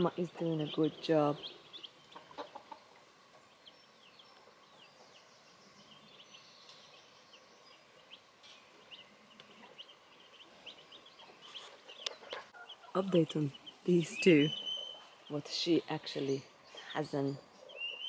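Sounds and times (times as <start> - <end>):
baby chicks peeping: 0.1 - 15.5.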